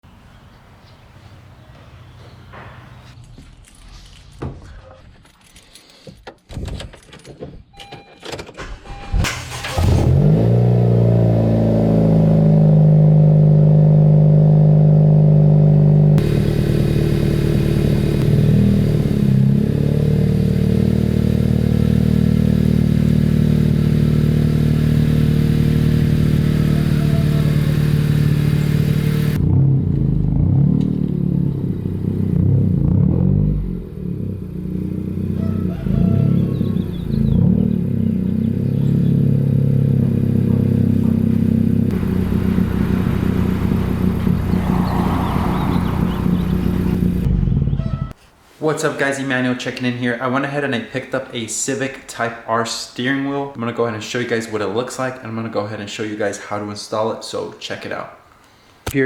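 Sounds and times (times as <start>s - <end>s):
keys jangling: 5.2s - 6.0s
car engine starting and idling: 8.6s - 47.8s.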